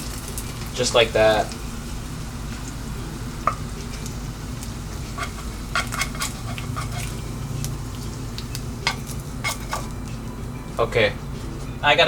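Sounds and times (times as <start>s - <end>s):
steady low hum: 0.0s - 12.0s
kitchen utensils and dishes clicking: 5.2s - 7.2s, 8.8s - 10.0s.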